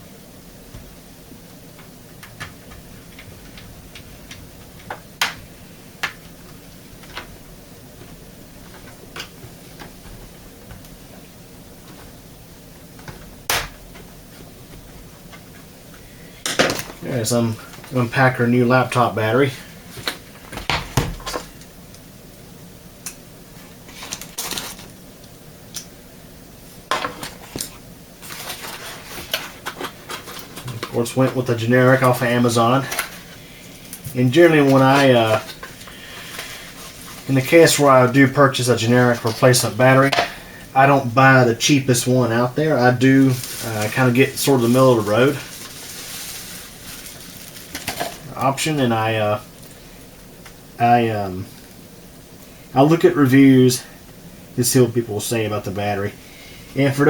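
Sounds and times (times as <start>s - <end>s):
packaging rustling and clicking: 23.9s - 25.0s, 43.2s - 48.3s.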